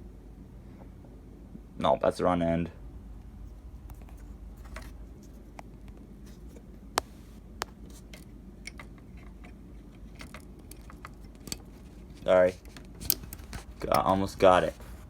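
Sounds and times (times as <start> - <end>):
handling clicks and light scrapes: 3.2 - 15.0.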